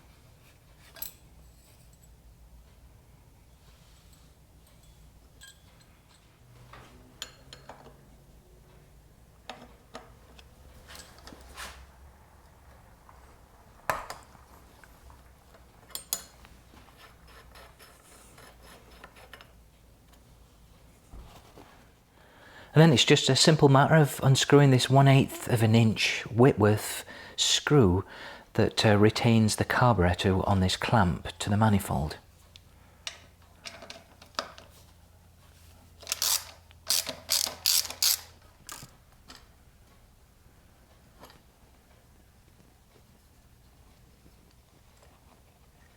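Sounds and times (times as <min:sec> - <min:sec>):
small metal parts clinking: 0:04.1 - 0:06.3, 0:36.0 - 0:38.9
ratchet wrench clicking: 0:36.0 - 0:38.9.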